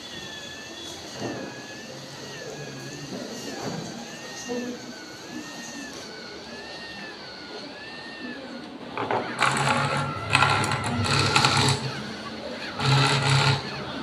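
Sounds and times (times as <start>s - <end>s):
electric motor rattling and humming: 0.0s - 14.0s.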